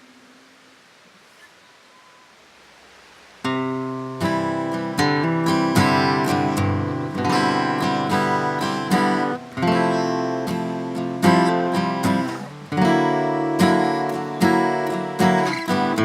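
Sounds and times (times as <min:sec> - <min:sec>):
acoustic guitar strumming: 0:03.4 - 0:16.0.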